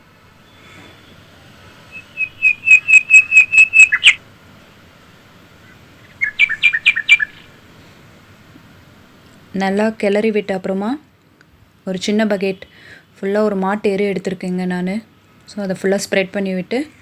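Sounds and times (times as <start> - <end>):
bird whistling call: 1.9 - 4.2, 6.0 - 7.5.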